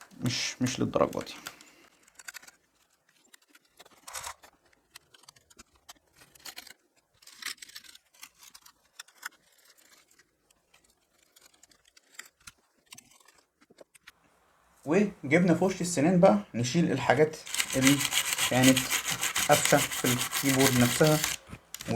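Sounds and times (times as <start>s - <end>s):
faint scrubbing strokes: 17.0s - 21.9s
small clicks: 17.4s - 21.9s.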